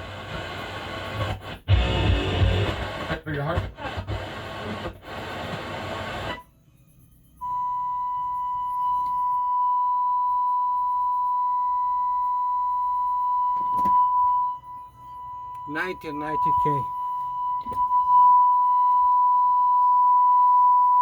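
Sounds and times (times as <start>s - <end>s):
music from stereo receiver: 0.0s - 6.4s
sine test tone: 6.3s - 21.0s.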